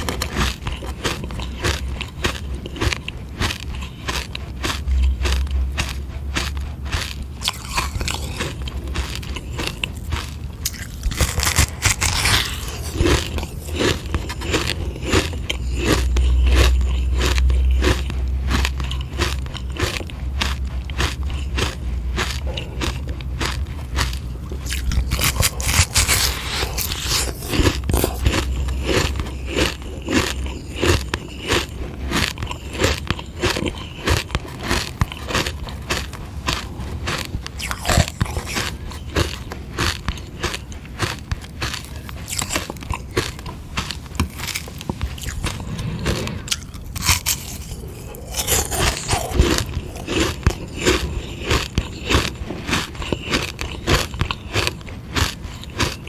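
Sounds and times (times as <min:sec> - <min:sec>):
teeth crunching ice: 0:00.0 - 0:56.0.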